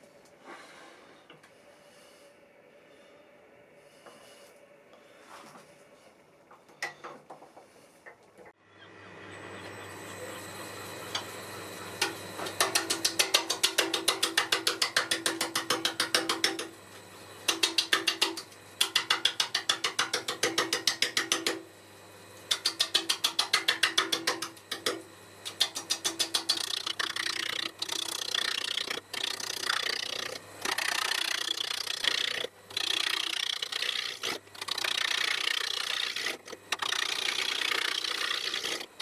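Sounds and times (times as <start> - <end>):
wood lathe humming: 8.8 - 39.0.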